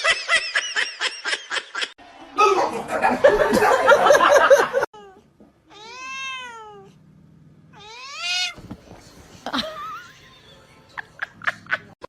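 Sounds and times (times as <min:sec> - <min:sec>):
cat meowing: 0:05.0 - 0:06.9, 0:07.8 - 0:08.6.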